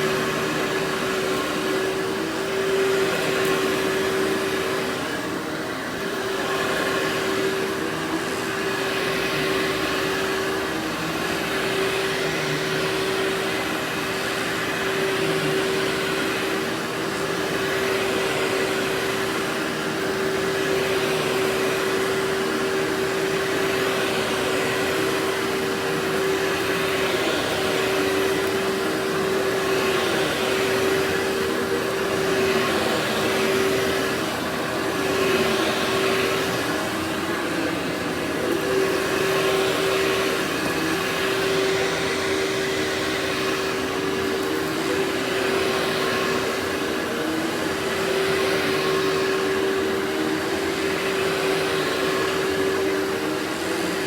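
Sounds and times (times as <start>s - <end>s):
vacuum cleaner running: 0.0s - 54.0s.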